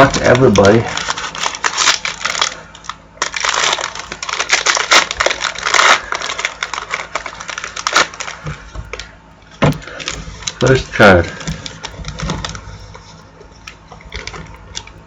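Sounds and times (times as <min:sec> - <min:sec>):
wrapper crinkling and tearing: 0:00.0 - 0:09.2, 0:09.9 - 0:15.0.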